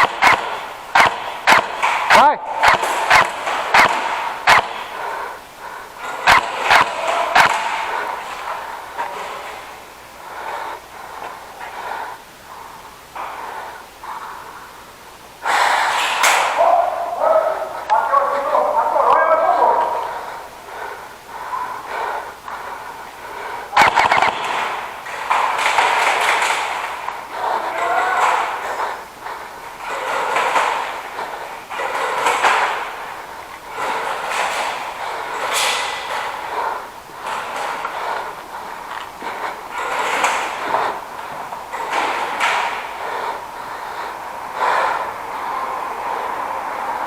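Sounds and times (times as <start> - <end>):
airsoft gun shots: 0.0 - 5.3, 6.0 - 9.7, 23.7 - 28.8.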